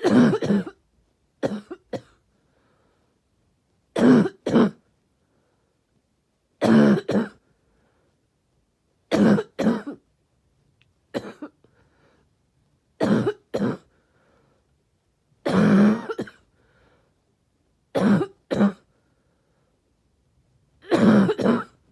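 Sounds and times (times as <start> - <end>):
person coughing: 0.0 - 0.8, 1.4 - 2.2, 4.0 - 4.8, 6.6 - 7.4, 9.1 - 10.0, 11.1 - 11.6, 13.0 - 13.9, 15.5 - 16.4, 18.0 - 18.9, 20.8 - 21.8.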